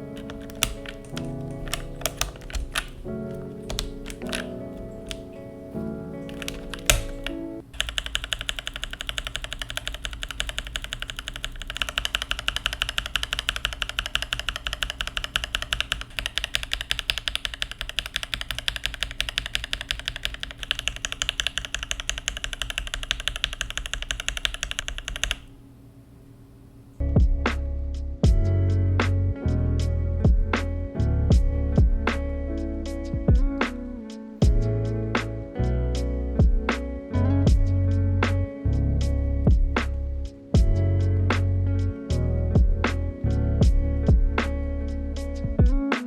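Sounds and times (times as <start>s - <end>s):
mechanical keyboard typing: 0.0s - 5.4s, 6.2s - 25.5s
music: 0.0s - 7.6s, 27.0s - 46.0s.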